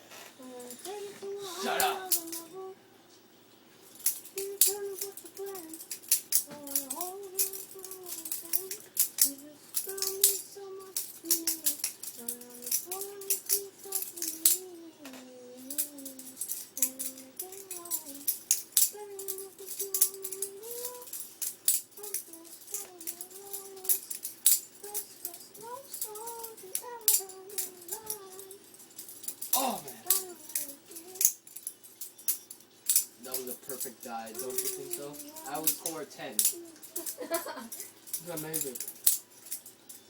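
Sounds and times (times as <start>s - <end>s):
person humming: 0.4s - 2.9s, 4.4s - 5.9s, 6.5s - 18.2s, 19.0s - 21.2s, 24.8s - 28.6s, 29.5s - 31.3s, 34.2s - 37.9s.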